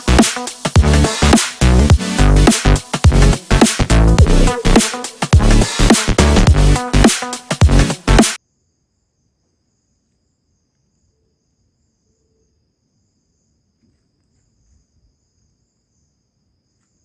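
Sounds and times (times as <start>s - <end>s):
electronic music: 0.0s - 8.4s.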